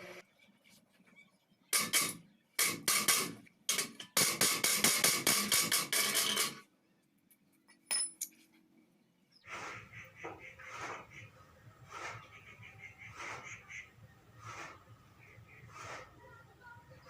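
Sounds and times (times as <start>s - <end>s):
hand tools striking steel: 1.8s - 6.6s, 7.8s - 8.4s.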